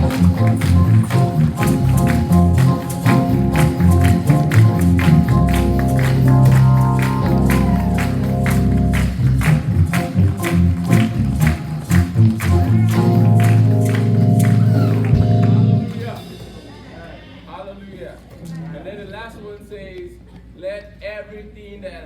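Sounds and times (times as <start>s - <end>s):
keyboard and bass chords: 0.0s - 16.4s
steady drum beat: 0.0s - 17.0s.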